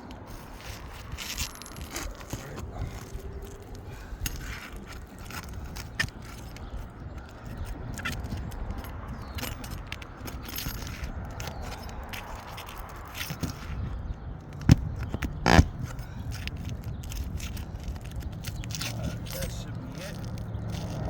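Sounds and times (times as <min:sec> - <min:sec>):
tool scraping against shingles: 0:00.0 - 0:21.0.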